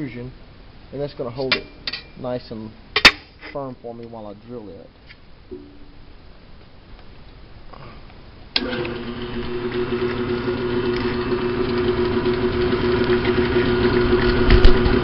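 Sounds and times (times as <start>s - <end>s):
electric drill drilling metal pipe: 8.6s - 15.0s.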